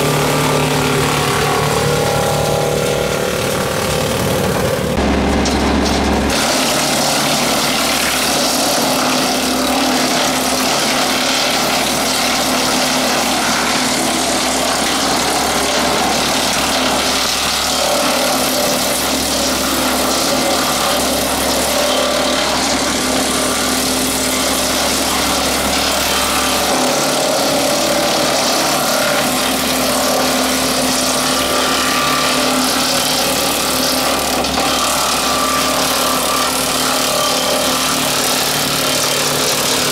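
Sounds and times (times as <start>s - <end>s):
tractor engine hum: 0.0s - 6.9s
wood chipper running: 0.0s - 39.9s.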